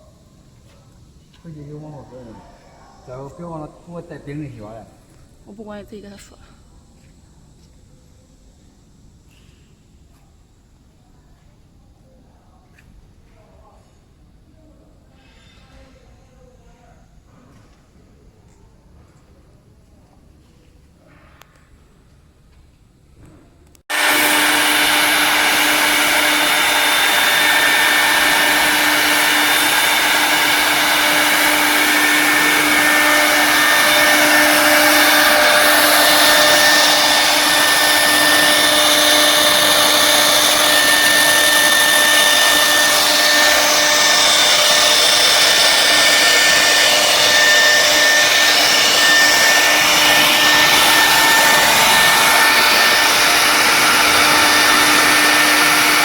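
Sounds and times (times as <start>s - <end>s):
router spindles whining: 23.9s - 56.0s.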